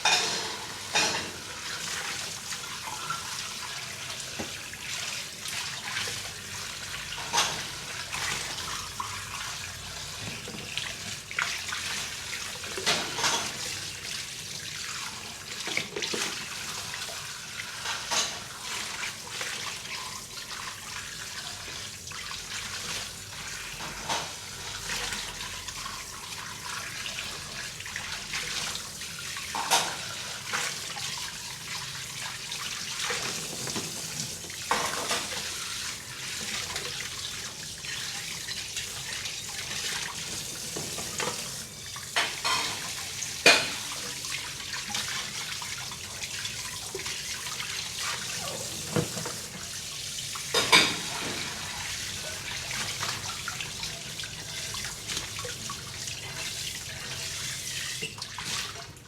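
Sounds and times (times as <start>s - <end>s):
dishes clinking and knocking: 0.0s - 1.5s, 42.2s - 43.9s, 50.5s - 51.7s
running tap water: 0.0s - 59.0s.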